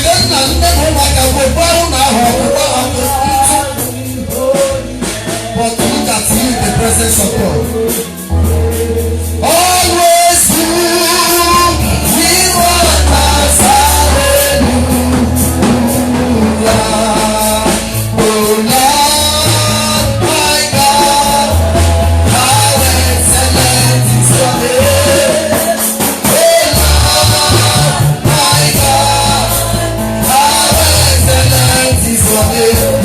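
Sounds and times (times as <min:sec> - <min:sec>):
live band playing: 0:00.0 - 0:33.0
people singing worship music: 0:00.0 - 0:33.0.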